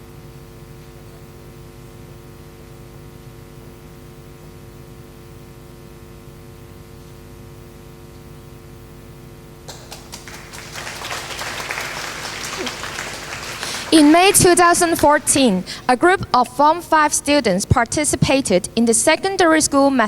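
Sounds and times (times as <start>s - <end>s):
electrical hum: 2.2s - 20.0s
applause: 9.7s - 15.9s.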